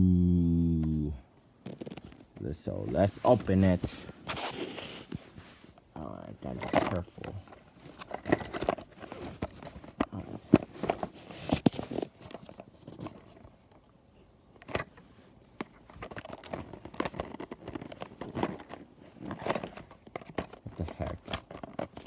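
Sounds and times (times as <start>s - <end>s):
box clicks and knocks: 7.9s - 13.2s.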